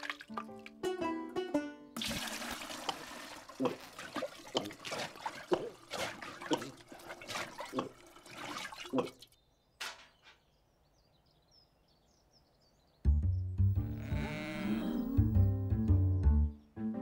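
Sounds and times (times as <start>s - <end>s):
water sloshing and dripping: 0.0s - 0.8s, 2.0s - 9.4s.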